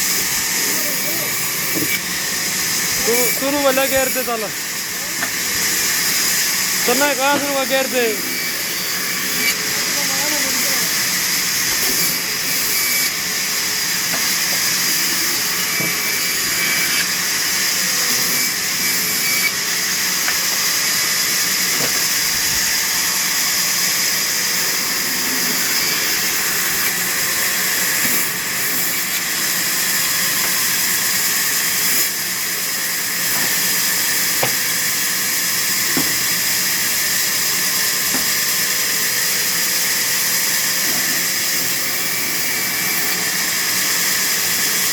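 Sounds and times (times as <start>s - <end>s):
saw cutting through timber: 0.0s - 44.9s.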